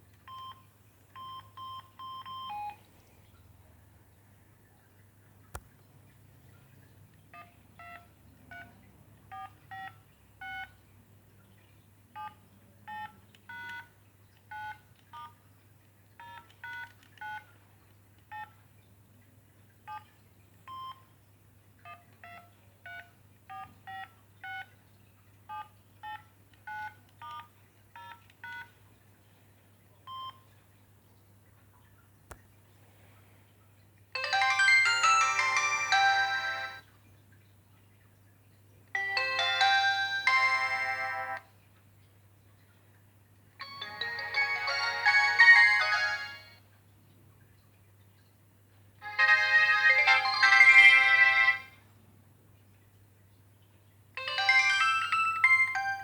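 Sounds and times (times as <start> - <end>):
phone keypad beeps: 0.3 - 2.8, 7.4 - 8.7, 9.3 - 10.7, 12.2 - 13.9, 14.5 - 15.3, 16.2 - 17.5, 20.7 - 21.1, 21.9 - 24.7, 25.5 - 28.7, 30.1 - 30.4.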